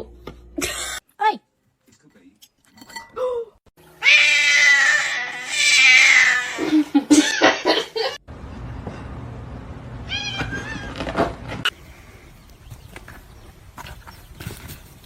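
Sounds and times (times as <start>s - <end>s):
cat meowing: 4.0s - 6.6s, 10.1s - 11.0s
cat yowling: 4.0s - 7.5s.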